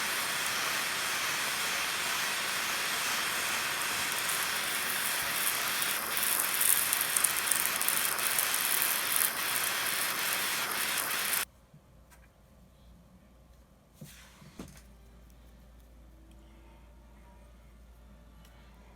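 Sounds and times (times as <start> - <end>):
steady hiss with crackle: 0.0 - 11.5.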